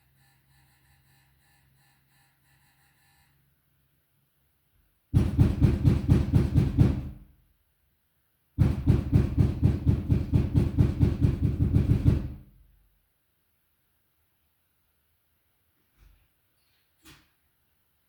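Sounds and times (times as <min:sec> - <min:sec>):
rapid knocking on door: 0:05.1 - 0:07.3, 0:08.6 - 0:12.5.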